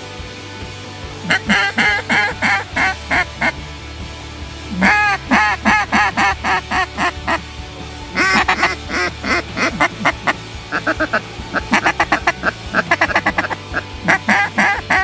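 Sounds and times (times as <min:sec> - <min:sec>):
loud duck quacking: 0:01.3 - 0:03.6, 0:04.7 - 0:07.4, 0:08.1 - 0:15.0.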